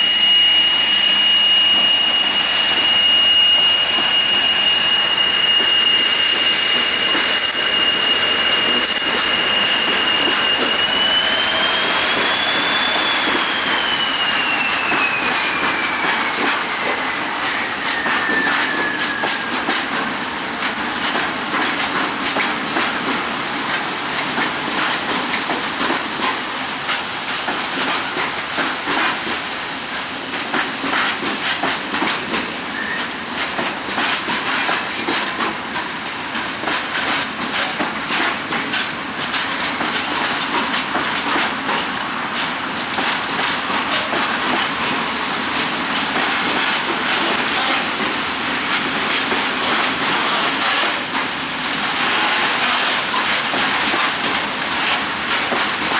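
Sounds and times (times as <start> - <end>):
thin wheel squeal: 0.0 - 20.0
train wheels clattering over rails: 0.0 - 55.9.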